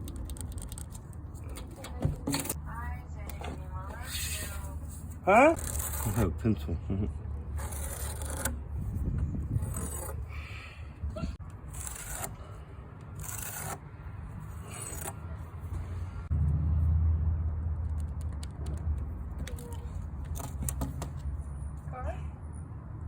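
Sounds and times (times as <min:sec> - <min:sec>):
scraping strokes: 0:03.5 - 0:06.4, 0:07.6 - 0:10.4, 0:11.6 - 0:16.3.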